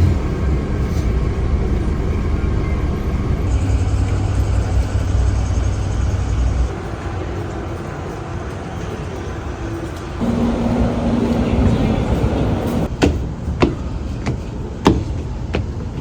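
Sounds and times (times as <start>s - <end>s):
vehicle engine rumble: 0.0s - 6.8s, 10.2s - 12.9s.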